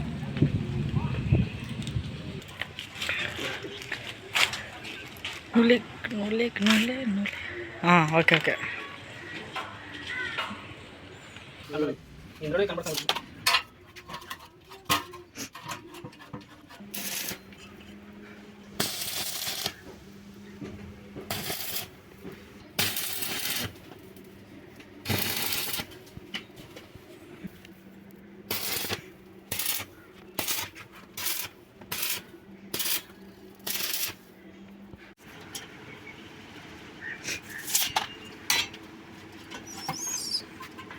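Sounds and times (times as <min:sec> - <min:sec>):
welding machine humming: 0:16.8 - 0:18.0, 0:18.6 - 0:26.2, 0:28.4 - 0:34.4
arc welding crackling bursts: 0:16.9 - 0:17.4, 0:18.8 - 0:19.9, 0:21.3 - 0:22.0, 0:22.8 - 0:23.9, 0:25.0 - 0:26.0, 0:28.5 - 0:34.3.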